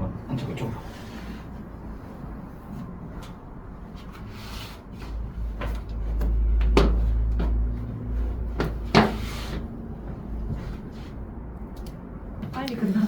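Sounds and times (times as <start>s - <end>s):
low rumble of table handling: 2.4s - 12.6s.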